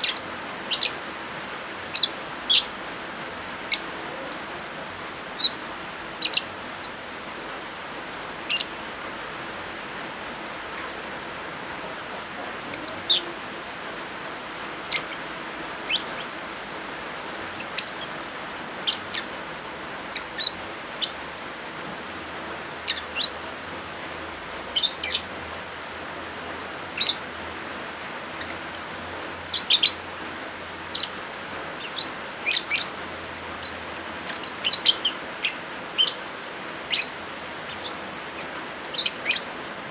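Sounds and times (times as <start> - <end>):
lovebirds chirping: 0.0 - 7.2, 8.3 - 8.9, 11.8 - 21.4, 22.2 - 39.9
steady hiss of rain: 0.0 - 39.9.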